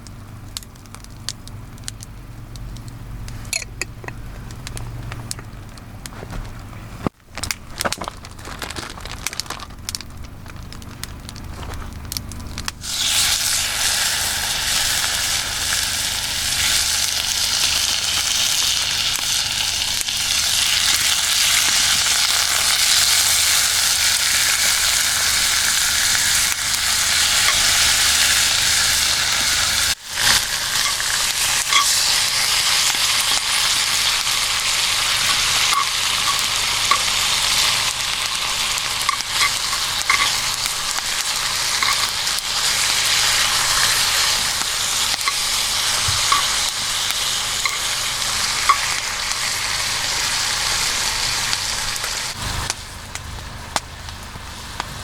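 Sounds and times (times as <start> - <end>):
food sizzling in hot oil: 12.4 - 55.0.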